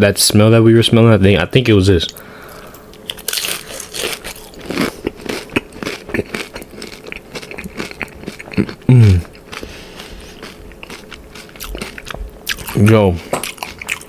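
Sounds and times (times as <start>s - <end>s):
chewing and crunching chips: 3.0s - 14.0s
person humming low: 8.9s - 9.3s.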